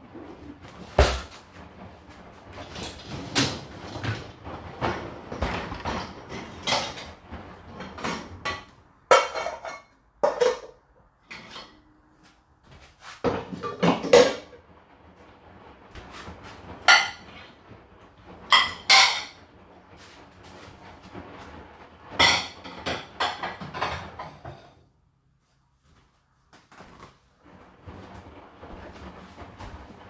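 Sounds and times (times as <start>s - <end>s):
dishes and cutlery clattering: 5.4s - 11.8s, 13.3s - 14.6s, 18.5s - 19.4s, 22.2s - 24.8s.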